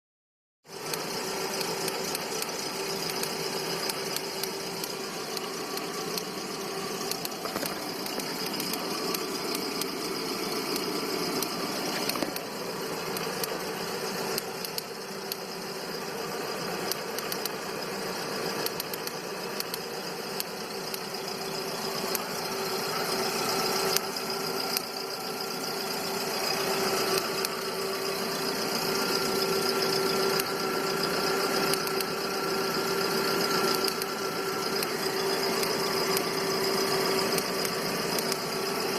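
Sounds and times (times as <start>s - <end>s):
car engine idling: 0.7s - 38.9s
irregular clicking: 0.8s - 6.4s, 7.0s - 10.0s, 10.6s - 13.6s, 14.3s - 15.5s, 16.9s - 17.6s, 18.6s - 21.1s, 31.6s - 32.4s, 33.0s - 38.8s.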